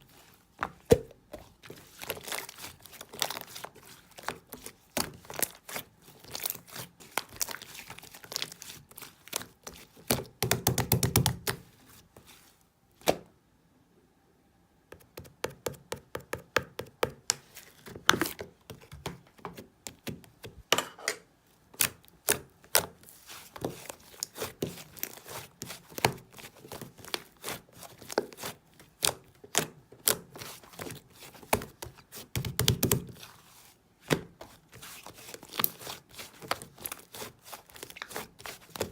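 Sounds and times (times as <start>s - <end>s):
low squishing of slime: 0.0s - 13.4s, 17.1s - 20.6s, 21.5s - 38.9s.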